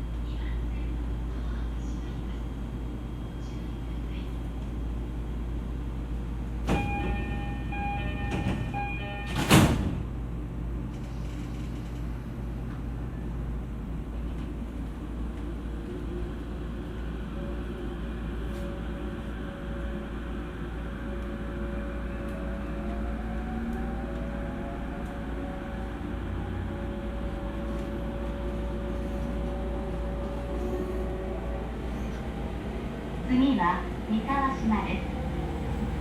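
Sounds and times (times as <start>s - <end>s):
train door chime: 6.6s - 10.0s
sliding doors closing thump: 8.0s - 10.1s.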